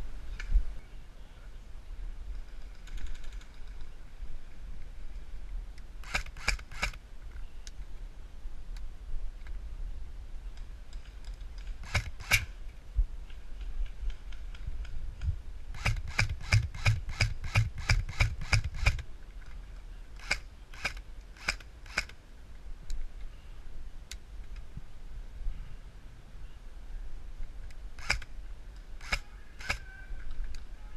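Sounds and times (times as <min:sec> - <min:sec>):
airsoft rifle shots: 0:06.0 - 0:07.0, 0:11.8 - 0:12.6, 0:15.7 - 0:19.0, 0:20.2 - 0:22.2, 0:28.0 - 0:28.3, 0:29.0 - 0:30.0.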